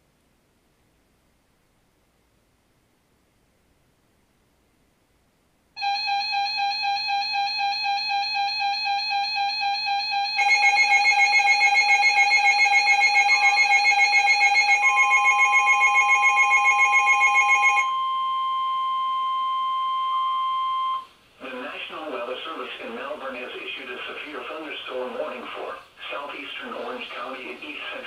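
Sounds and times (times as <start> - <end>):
steady alarm tone: 5.8 - 21.1
electronic tone beeping rapidly: 7.2 - 21.1.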